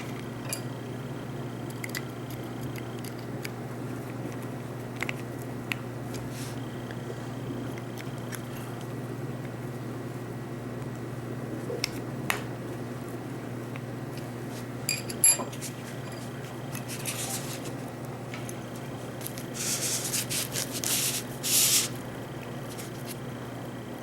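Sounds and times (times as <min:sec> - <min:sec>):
steady low hum: 0:00.0 - 0:24.0
rubbing and scraping: 0:19.5 - 0:21.9.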